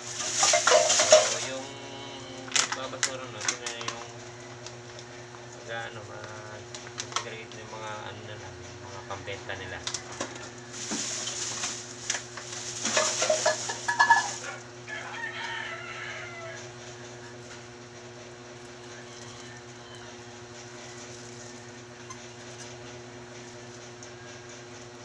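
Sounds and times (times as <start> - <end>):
rustling noise: 0.0 - 1.7, 10.6 - 14.5
steady low hum: 0.0 - 15.4
rooster crowing: 13.3 - 17.4, 18.7 - 22.7.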